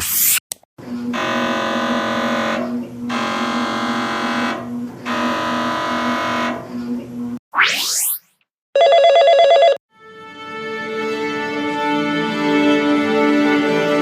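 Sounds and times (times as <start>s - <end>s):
harsh electronic buzzer: 1.0s - 6.7s.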